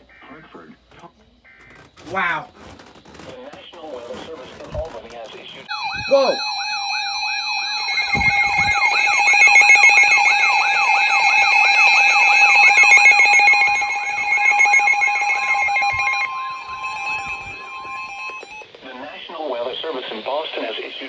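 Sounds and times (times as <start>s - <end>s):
siren-like alert sweep: 5.7s - 18.6s
steady high alert tones: 5.7s - 18.6s.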